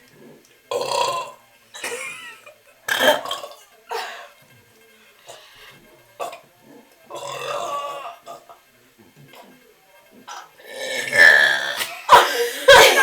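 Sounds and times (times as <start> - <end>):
girls burping: 0.7 - 4.4, 7.1 - 8.6, 10.2 - 13.0.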